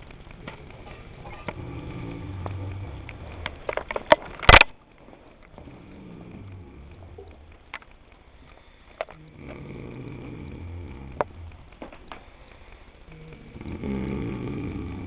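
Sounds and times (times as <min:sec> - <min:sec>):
sharp clicks: 0:00.0 - 0:14.8
person snoring: 0:01.5 - 0:03.6, 0:05.6 - 0:07.5, 0:09.2 - 0:11.7, 0:13.1 - 0:15.0.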